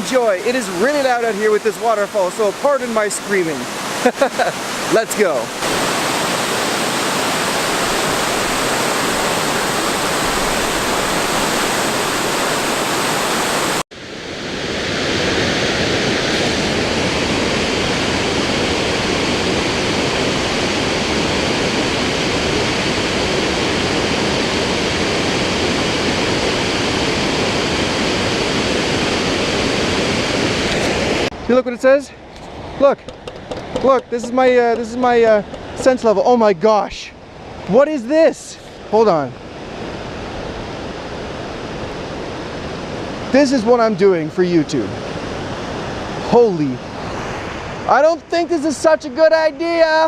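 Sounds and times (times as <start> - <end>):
waterfall rushing: 0.0 - 31.3.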